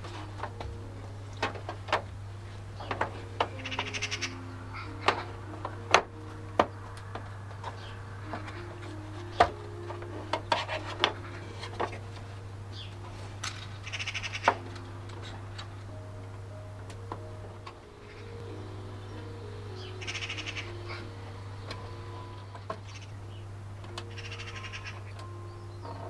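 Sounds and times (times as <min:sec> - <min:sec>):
steady low hum: 0:00.0 - 0:26.0.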